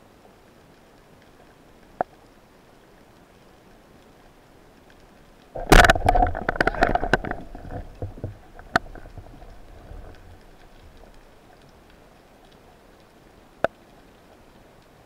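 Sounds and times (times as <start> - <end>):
underwater clicks and knocks: 5.6 - 11.8.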